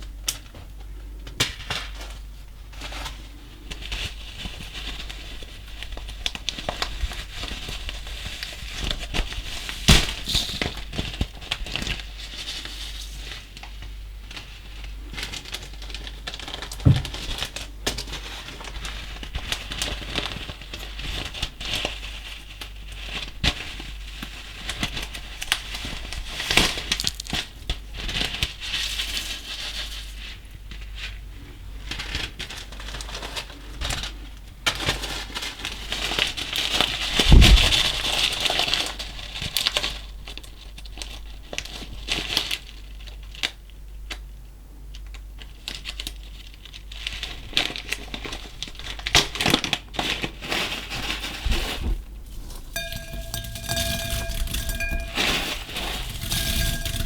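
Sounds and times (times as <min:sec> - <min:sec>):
louder thump: 0:16.8 - 0:17.2, 0:37.3 - 0:37.9.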